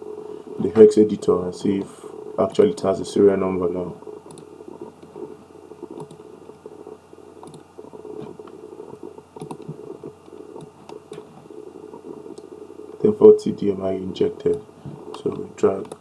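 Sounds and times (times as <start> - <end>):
faint electrical hum: 0.0 - 16.0
mouse and keyboard clicks: 4.3 - 5.2, 5.9 - 6.2, 7.4 - 11.3.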